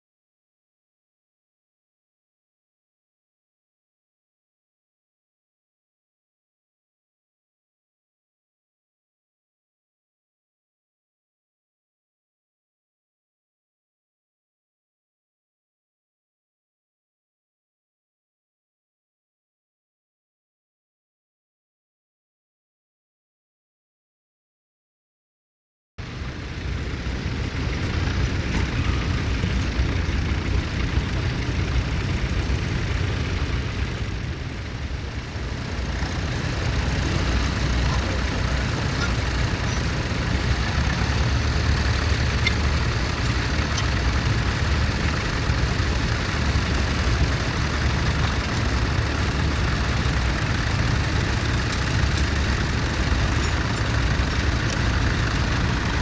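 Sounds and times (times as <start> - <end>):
tractor engine running: 26.0 - 56.0.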